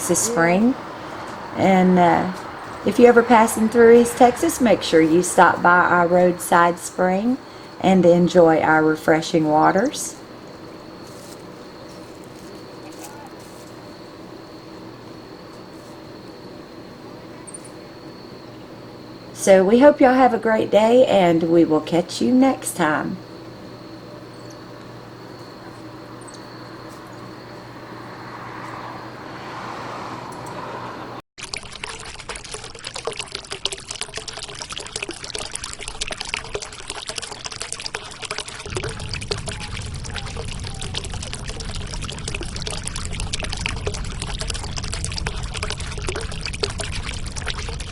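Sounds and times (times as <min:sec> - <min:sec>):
spring water pouring and splashing: 0:00.0 - 0:16.2, 0:31.4 - 0:47.9
faint high whine and hum: 0:00.0 - 0:29.2, 0:38.6 - 0:47.9.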